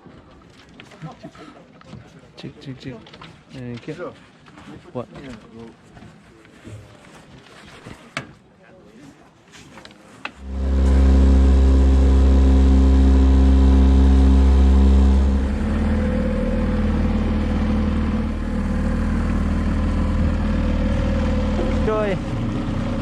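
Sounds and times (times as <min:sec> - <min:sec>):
engine running: 0:10.4 - 0:23.0.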